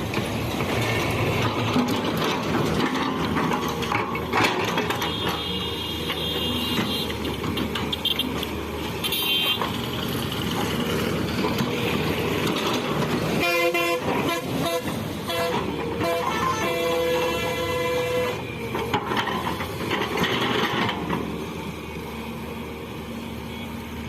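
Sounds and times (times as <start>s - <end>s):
excavator diesel engine running: 0.0s - 24.0s
vehicle horn honks: 9.0s - 9.6s, 13.4s - 18.4s.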